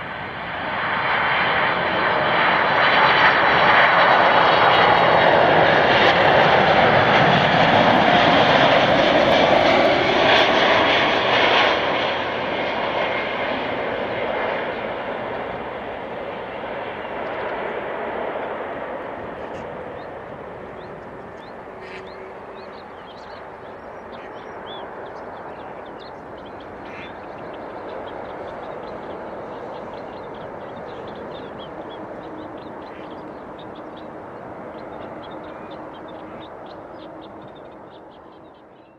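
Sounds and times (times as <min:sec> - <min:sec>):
distant jet rumble: 0:00.0 - 0:38.8
birds chirping: 0:14.2 - 0:38.9.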